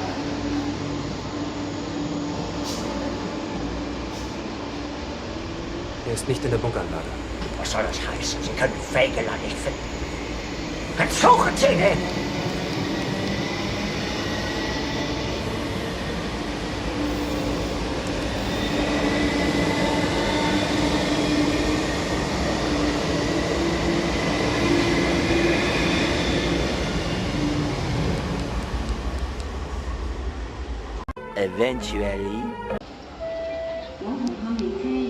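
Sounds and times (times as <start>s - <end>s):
electric train running: 4.6s - 30.2s.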